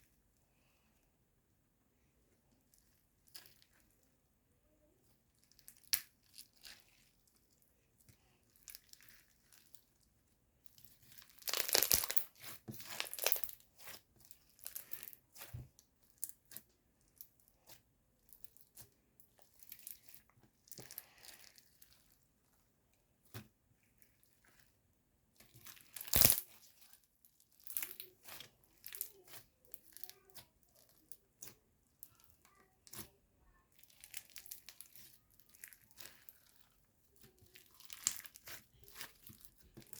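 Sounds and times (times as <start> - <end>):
crunchy slime crackling: 10.7 - 22.3, 23.2 - 32.2, 33.7 - 39.9.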